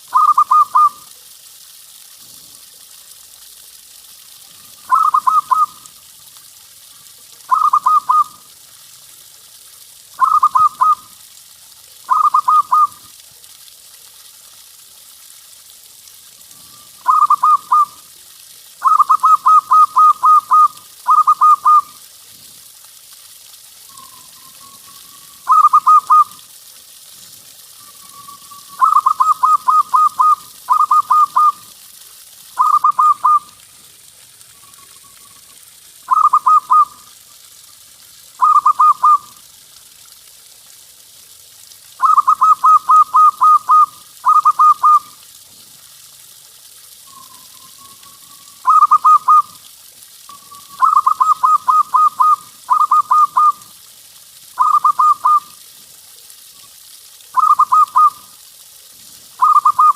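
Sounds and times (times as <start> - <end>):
dove cooing: 0.1 - 1.0, 4.9 - 5.7, 7.5 - 8.3, 10.2 - 11.0, 12.1 - 13.0, 17.0 - 18.0, 18.8 - 21.9, 25.4 - 26.4, 28.8 - 31.6, 36.1 - 36.9, 38.4 - 39.2, 48.6 - 49.5, 54.6 - 55.4, 57.4 - 58.2, 59.4 - 59.9.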